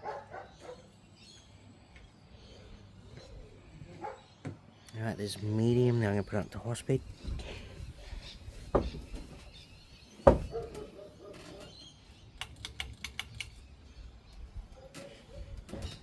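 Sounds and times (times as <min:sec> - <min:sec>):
sharp knock: 0:10.3 - 0:10.6.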